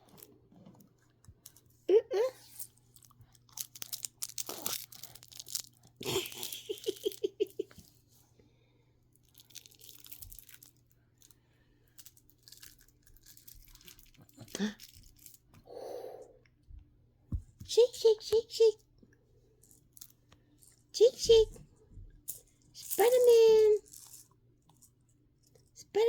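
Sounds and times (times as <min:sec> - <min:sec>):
baby shaker toy rattling: 0:03.7 - 0:07.4, 0:22.3 - 0:24.3.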